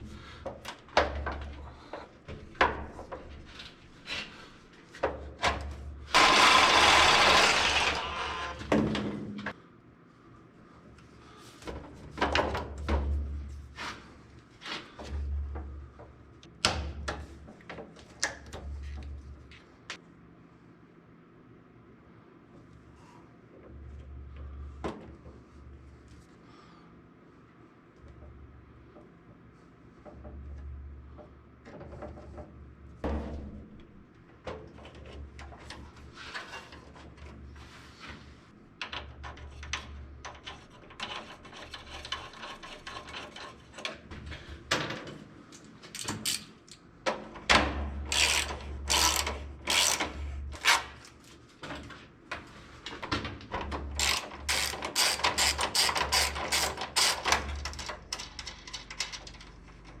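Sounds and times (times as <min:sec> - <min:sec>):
hand tools clicking and rattling: 0:48.1 - 0:50.8, 0:53.9 - 0:59.5.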